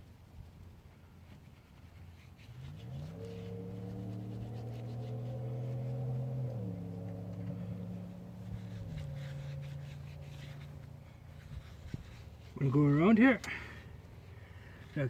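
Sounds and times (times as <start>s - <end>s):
rubbing and scrubbing: 1.3s - 13.0s
engine humming: 2.3s - 15.0s.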